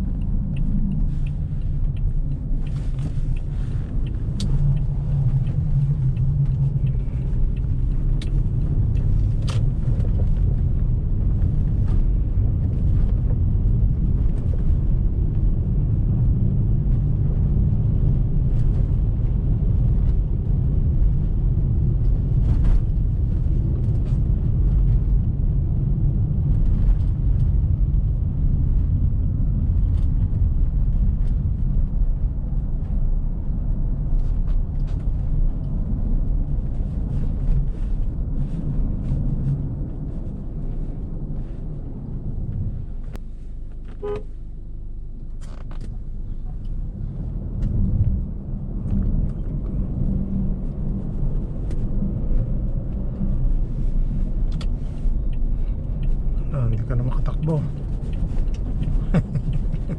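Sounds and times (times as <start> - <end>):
car driving over snow: 45.2 - 59.9.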